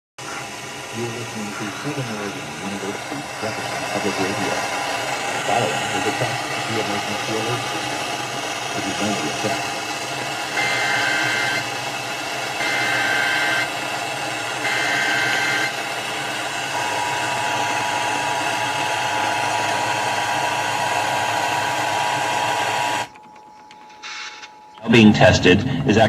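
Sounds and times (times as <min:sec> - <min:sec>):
radio static hiss: 0:00.2 - 0:24.6
data burst tones: 0:00.2 - 0:24.8
two-tone attention signal: 0:10.5 - 0:11.7, 0:12.5 - 0:13.8, 0:14.6 - 0:15.8.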